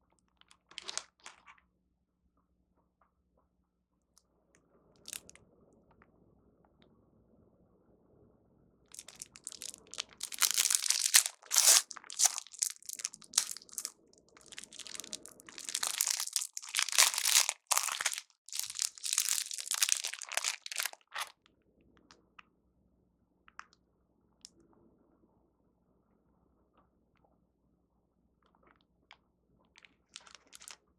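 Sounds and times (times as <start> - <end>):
plastic wrapper crinkling: 0.7 - 1.5, 9.0 - 21.3, 30.2 - 30.8.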